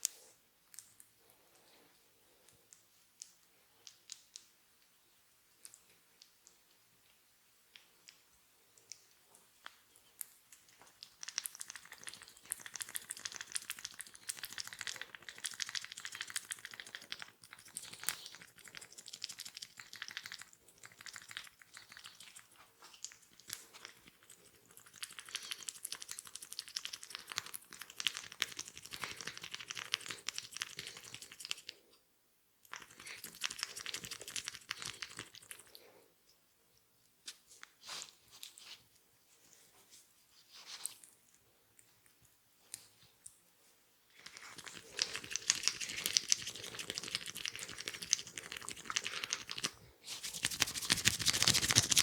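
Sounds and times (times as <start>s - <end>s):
fingers scratching through hair: 44.3s - 52.0s.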